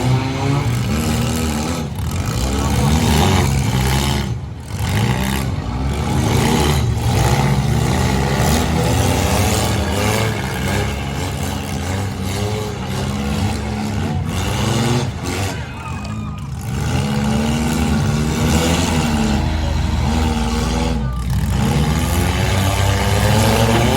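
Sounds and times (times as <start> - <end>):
car engines revving: 0.0 - 23.9.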